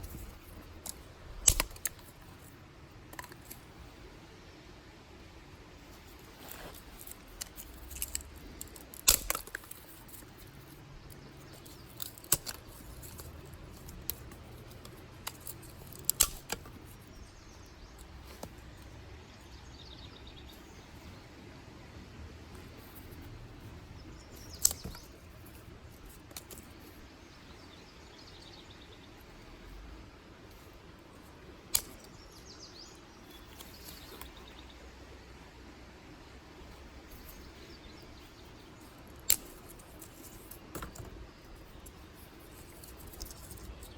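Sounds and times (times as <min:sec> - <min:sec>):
sticks snapping: 0:00.0 - 0:02.5, 0:03.1 - 0:03.7, 0:06.1 - 0:17.2, 0:24.3 - 0:26.7, 0:31.7 - 0:32.5, 0:38.9 - 0:43.9
faint bird chirps: 0:26.6 - 0:29.5.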